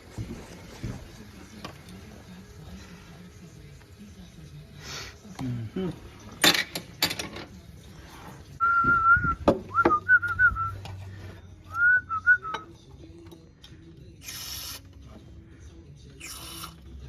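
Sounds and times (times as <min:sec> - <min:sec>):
person whistling a tune: 0:08.6 - 0:10.8, 0:11.7 - 0:12.7.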